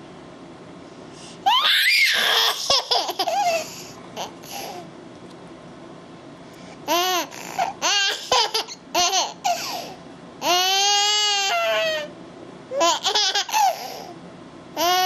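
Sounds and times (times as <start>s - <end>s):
child squealing and babbling: 1.5s - 2.8s, 10.4s - 12.1s.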